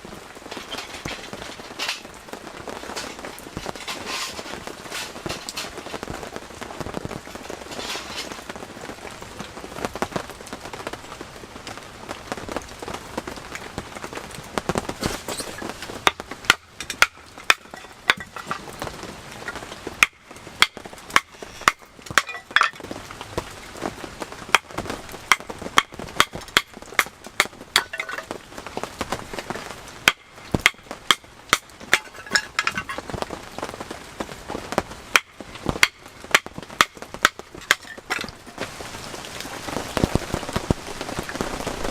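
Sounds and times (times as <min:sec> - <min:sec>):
rain on a canvas tent: 0:00.0 - 0:41.9
sharp irregular clicks and knocks: 0:16.0 - 0:18.7.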